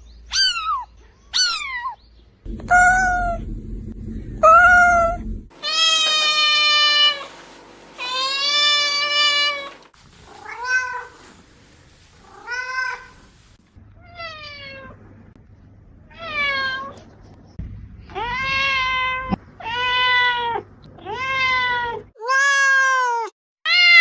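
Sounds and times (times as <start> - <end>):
cat meowing: 0.3 - 2.0, 2.6 - 3.4, 4.4 - 7.2, 18.1 - 24.0.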